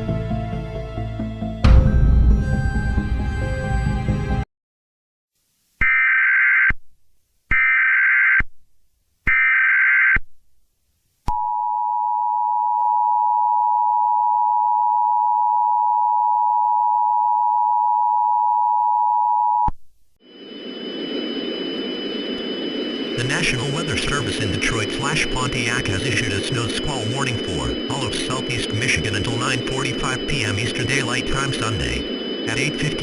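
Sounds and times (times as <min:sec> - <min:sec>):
screeching data bursts: 0:20.5 - 0:33.0.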